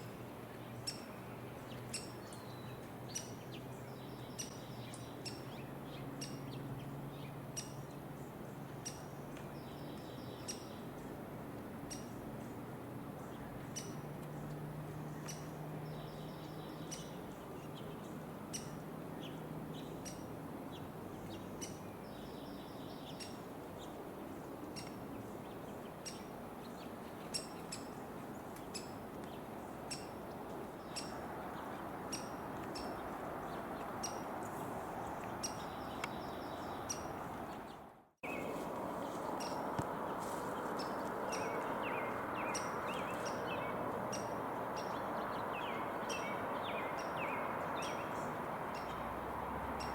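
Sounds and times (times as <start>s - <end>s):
steady outdoor hiss: 0.0s - 49.9s
wild birds calling: 13.2s - 49.9s.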